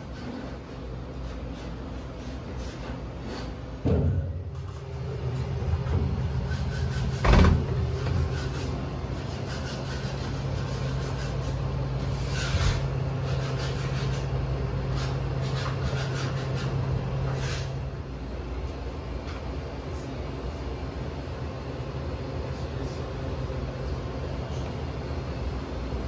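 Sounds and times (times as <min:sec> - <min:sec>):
low mechanical hum: 0:00.0 - 0:26.0
loud knock: 0:07.2 - 0:07.8.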